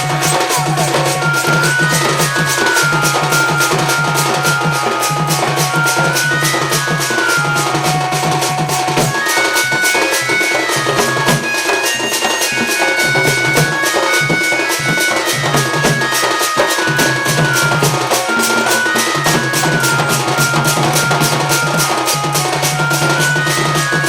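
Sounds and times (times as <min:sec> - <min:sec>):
fast drumming: 0:00.0 - 0:24.0
shrill wind instrument melody: 0:00.0 - 0:24.0.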